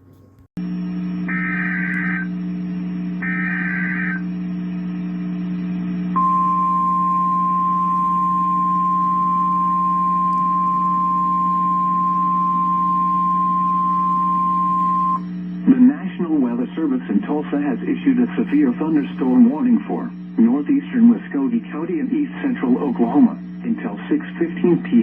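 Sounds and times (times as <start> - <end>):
low receiver hum: 0.2 - 25.0
steady warning alarm tone: 0.6 - 15.8, 17.8 - 21.6.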